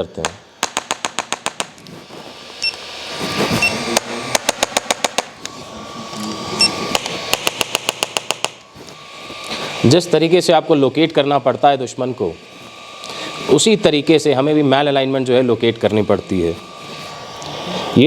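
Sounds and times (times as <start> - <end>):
rapid sharp mechanical clicks: 0.1 - 1.9, 3.9 - 5.6, 6.9 - 8.6
short high beeps: 3.6 - 3.8.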